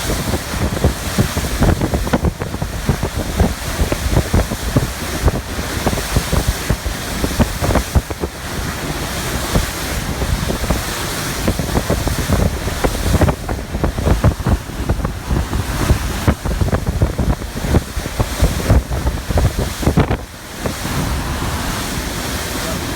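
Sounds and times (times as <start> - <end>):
water rushing past boat: 0.0 - 22.9
wind buffeting microphone: 0.0 - 22.9.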